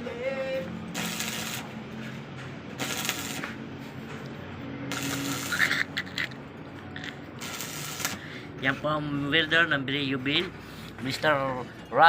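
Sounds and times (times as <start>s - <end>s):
crackling welding arc: 0.9s - 1.8s, 2.7s - 3.6s, 4.8s - 6.4s, 7.0s - 8.3s.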